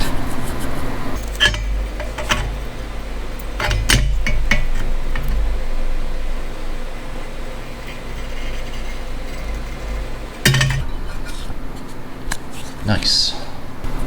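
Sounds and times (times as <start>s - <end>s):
sheet metal clinks and knocks: 1.2s - 11.6s.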